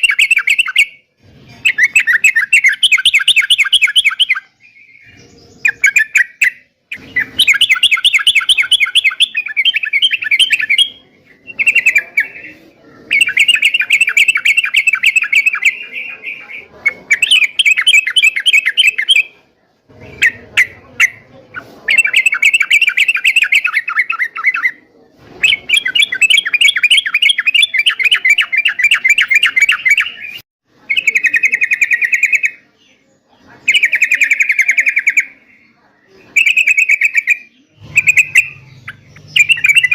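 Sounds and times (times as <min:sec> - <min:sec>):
bird singing rattling notes: 0:01.6 - 0:16.0, 0:36.4 - 0:39.9.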